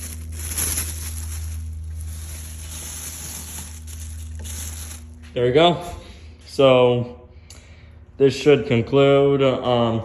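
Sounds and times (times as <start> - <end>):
plastic bag rustling: 0.0 - 6.0
low hum: 0.0 - 8.9.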